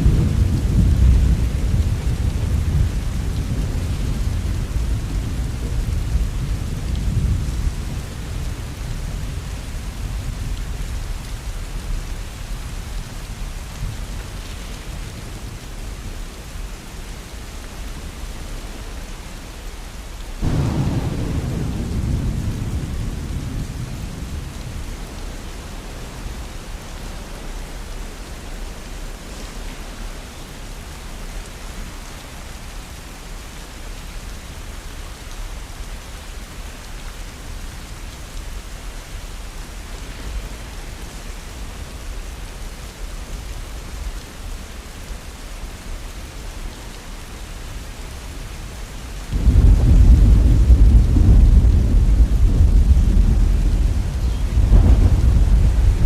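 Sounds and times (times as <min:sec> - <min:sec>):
low thunder rumble: 0:00.0 - 0:15.6, 0:20.4 - 0:26.4, 0:49.3 - 0:56.0
steady rain falling: 0:00.0 - 0:56.0
loud thunderclap: 0:20.4 - 0:24.8, 0:49.3 - 0:56.0.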